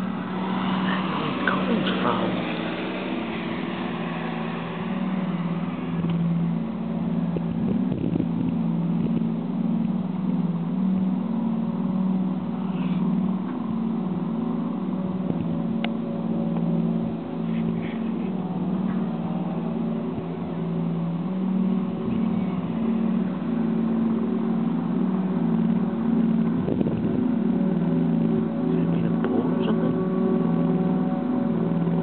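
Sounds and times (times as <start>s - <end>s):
low mechanical drone: 0.0s - 32.0s.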